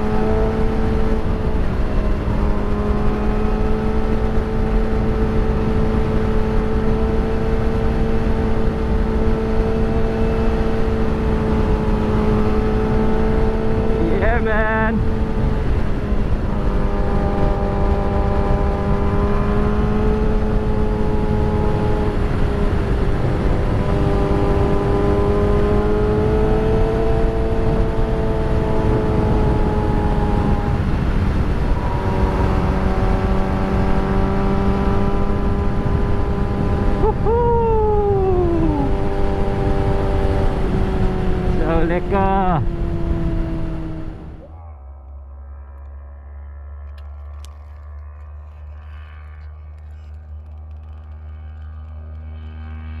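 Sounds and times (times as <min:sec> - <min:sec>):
heavy wind noise: 0:00.0 - 0:44.6
vehicle engine running: 0:11.0 - 0:53.0
vehicle passing by: 0:21.2 - 0:50.0, 0:51.1 - 0:53.0.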